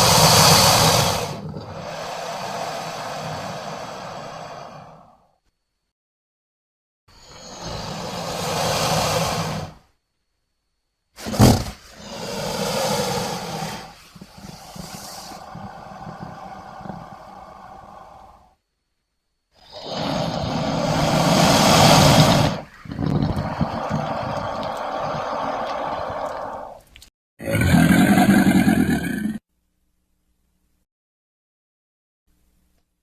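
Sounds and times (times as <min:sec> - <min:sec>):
crocodile calls: 0:00.0 - 0:05.2, 0:07.2 - 0:09.8, 0:11.4 - 0:18.6, 0:19.6 - 0:26.8, 0:27.4 - 0:29.4.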